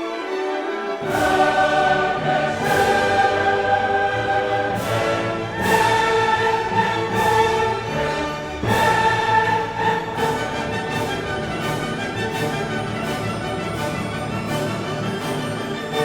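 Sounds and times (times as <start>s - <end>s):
choir singing with orchestra: 0.0s - 16.0s.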